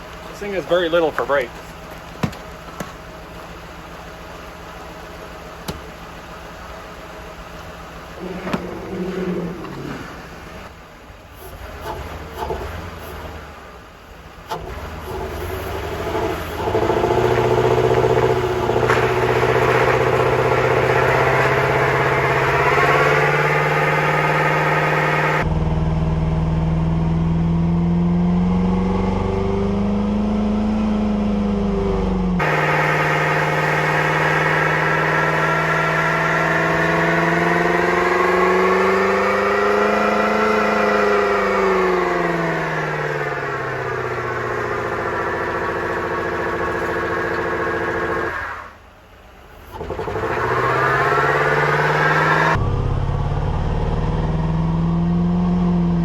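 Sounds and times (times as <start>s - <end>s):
car engine revving high: 8.1s - 10.7s, 14.5s - 48.7s, 49.7s - 56.0s.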